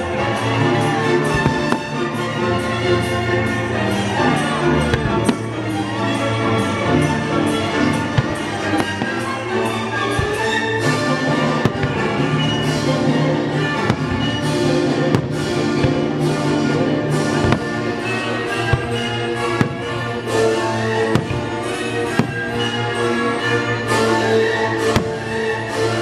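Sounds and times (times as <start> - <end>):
orchestral music: 0.0 - 26.0
fireworks bangs: 0.8 - 2.3, 6.9 - 23.7, 24.8 - 25.7.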